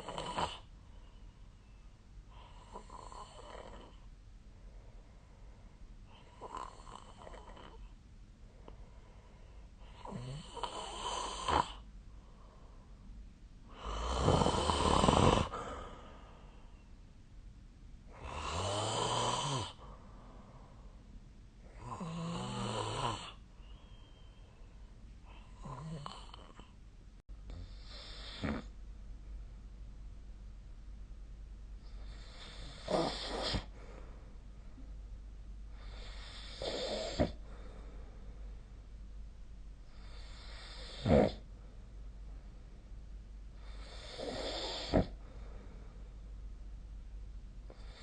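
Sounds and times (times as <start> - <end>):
person snoring: 0.0 - 0.7, 2.4 - 4.0, 9.9 - 11.8, 13.7 - 16.4, 18.1 - 19.9, 21.7 - 23.4, 25.3 - 26.7, 27.5 - 28.7, 32.0 - 33.8, 35.8 - 37.4, 43.6 - 45.2.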